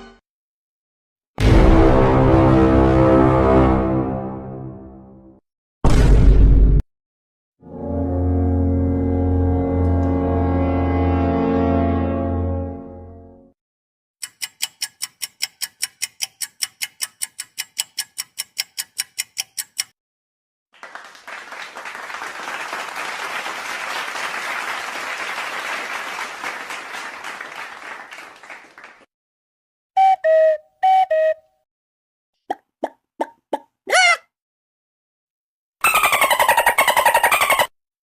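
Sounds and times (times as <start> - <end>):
applause: 20.8 - 29.1
short tonal blips: 30.0 - 31.5.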